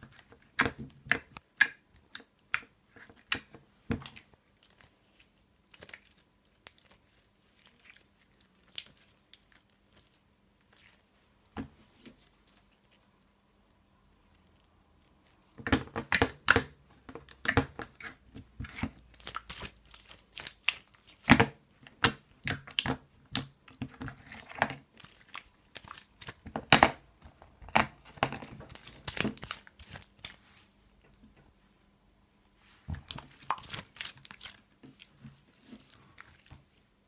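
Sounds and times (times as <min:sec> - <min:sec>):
slime crust crackling: 0:17.2 - 0:21.4, 0:22.0 - 0:30.7, 0:32.9 - 0:36.9.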